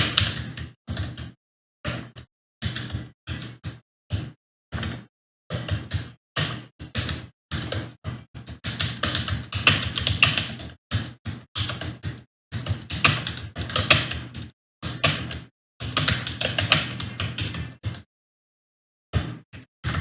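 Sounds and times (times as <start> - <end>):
fast typing on computer keyboard: 0.0 - 1.4, 4.2 - 18.0.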